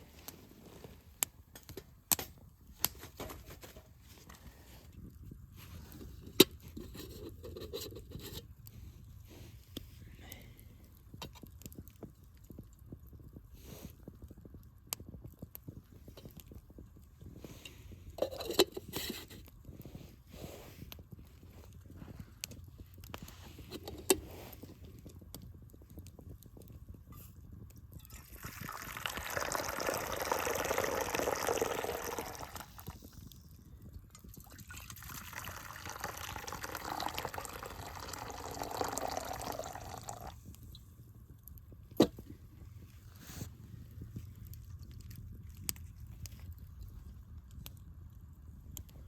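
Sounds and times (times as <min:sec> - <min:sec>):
liquid pouring: 0:28.0 - 0:33.0, 0:34.4 - 0:40.4.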